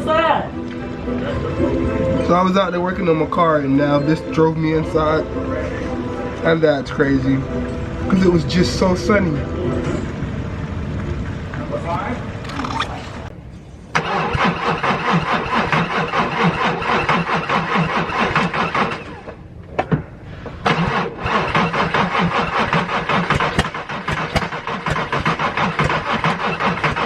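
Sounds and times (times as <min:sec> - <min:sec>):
car starter cranking engine: 0:13.9 - 0:19.4, 0:20.6 - 0:27.0.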